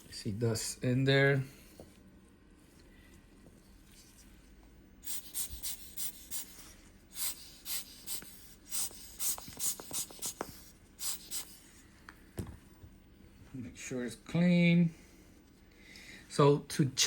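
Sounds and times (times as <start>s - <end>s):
short puffs of air: 5.0s - 11.9s.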